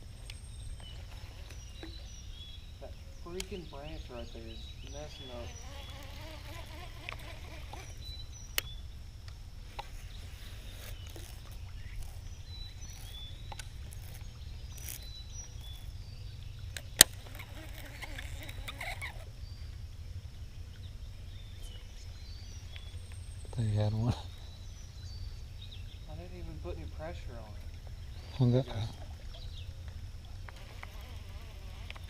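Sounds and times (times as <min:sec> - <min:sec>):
birds chirping: 0:00.0 - 0:32.0
sharp clicks: 0:05.8 - 0:07.9.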